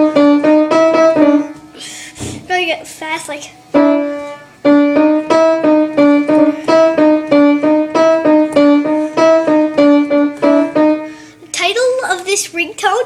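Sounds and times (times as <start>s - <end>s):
piano fast repeating melody: 0.0s - 1.5s, 3.7s - 11.3s.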